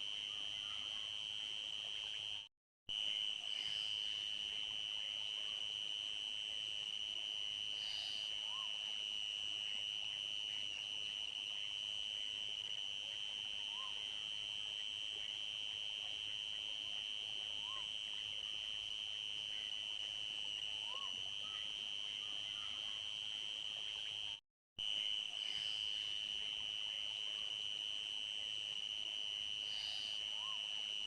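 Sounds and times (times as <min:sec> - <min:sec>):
crickets chirring: 0:07.0 - 0:31.0.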